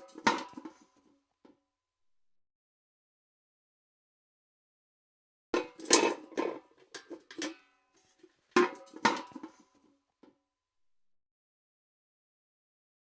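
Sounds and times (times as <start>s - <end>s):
steel bucket clanking: 0.0s - 0.8s, 5.6s - 7.7s, 8.6s - 9.7s.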